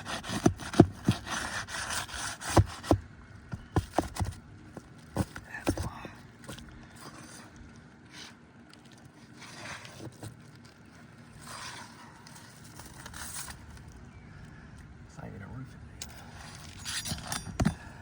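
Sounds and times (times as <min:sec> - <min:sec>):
roofing shingle scraping: 0:00.0 - 0:08.4, 0:09.1 - 0:14.0.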